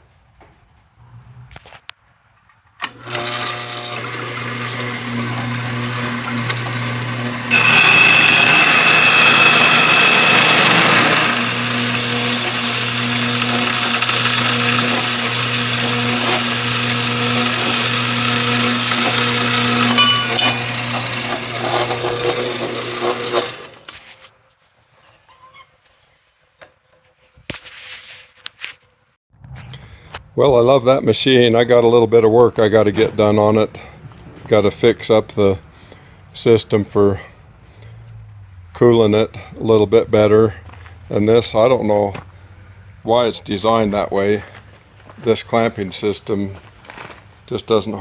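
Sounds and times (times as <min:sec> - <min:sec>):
bandsaw cutting steel: 0:02.8 - 0:24.3.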